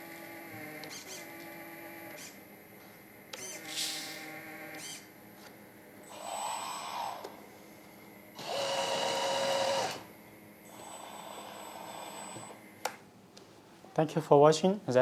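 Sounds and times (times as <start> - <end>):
hydraulic pump whining: 3.3 - 5.1, 6.0 - 7.4, 8.4 - 10.1, 10.7 - 12.8.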